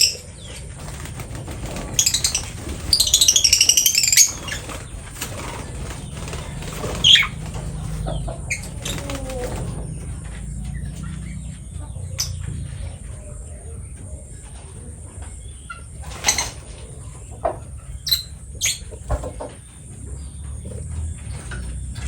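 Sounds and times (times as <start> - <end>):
bird chirps: 0.0 - 14.6
lovebird chattering: 1.7 - 10.0.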